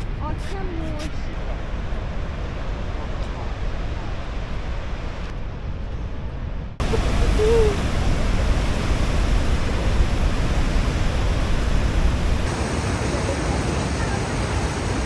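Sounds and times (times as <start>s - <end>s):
waterfall roaring: 6.8s - 15.0s.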